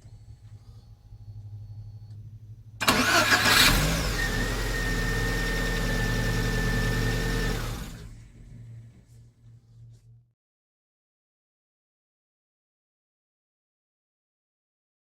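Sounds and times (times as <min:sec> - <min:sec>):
starter motor cranking: 0:02.8 - 0:08.1
car engine running: 0:02.8 - 0:09.2.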